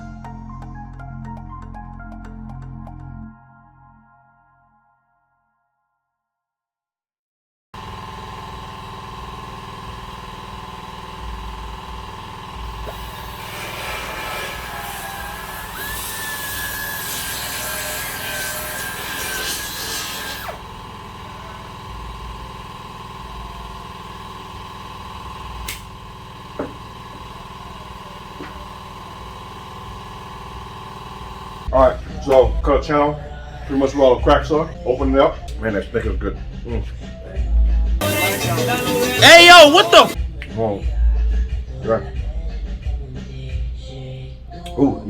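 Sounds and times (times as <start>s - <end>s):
air sander grinding plastic: 7.8s - 31.7s, 38.0s - 40.2s.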